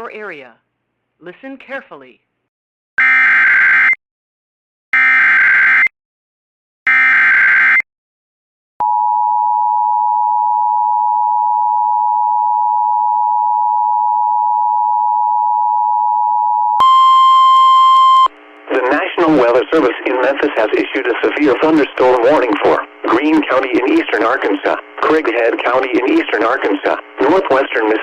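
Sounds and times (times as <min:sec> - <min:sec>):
two-tone attention signal: 0:16.8 - 0:18.3.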